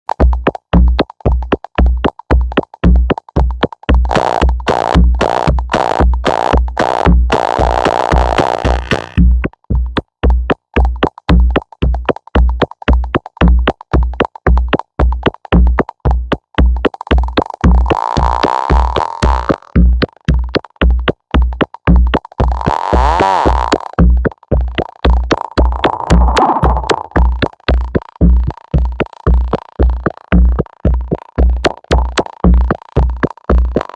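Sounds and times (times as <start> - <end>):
kick drum: 0.1 - 33.9
electronic synth music: 0.2 - 9.7, 10.3 - 33.9.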